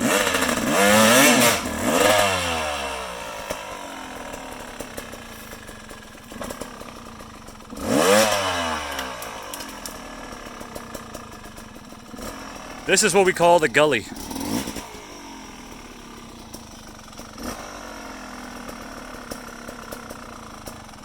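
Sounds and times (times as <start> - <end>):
off-road vehicle engine revving: 0.0 - 6.9, 7.6 - 11.2, 11.9 - 20.7.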